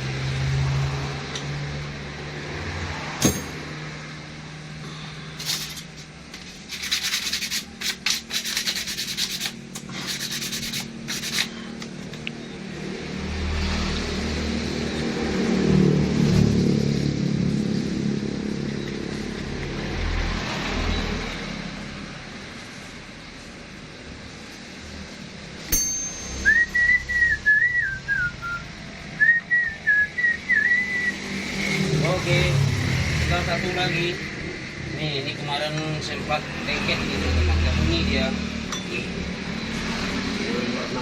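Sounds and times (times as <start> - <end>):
hand scrubbing strokes: 5.4 - 11.6.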